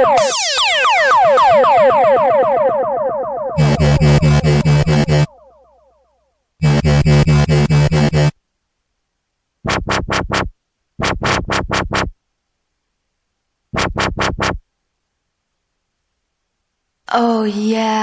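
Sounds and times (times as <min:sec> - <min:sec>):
stuttering synth bursts: 0:03.6 - 0:05.4, 0:06.6 - 0:08.3, 0:09.7 - 0:12.2, 0:13.8 - 0:14.6.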